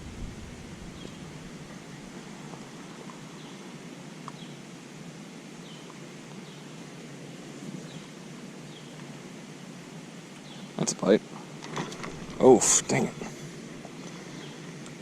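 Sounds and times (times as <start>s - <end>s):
bird chirping: 0.8s - 1.3s
outdoor rushing background: 11.8s - 13.9s.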